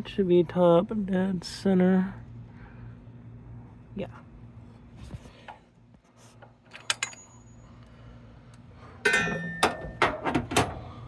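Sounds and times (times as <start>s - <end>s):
metal tools clinking: 6.6s - 7.8s, 9.0s - 10.1s
ringing metal clatter: 9.0s - 10.2s.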